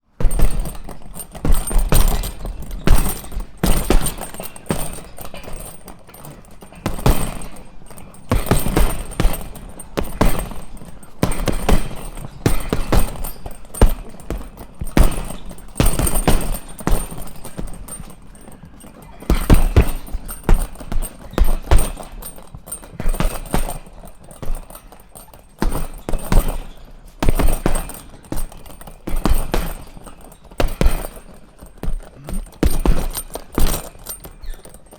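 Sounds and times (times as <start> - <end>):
punches thudding on bag: 0.1 - 34.9.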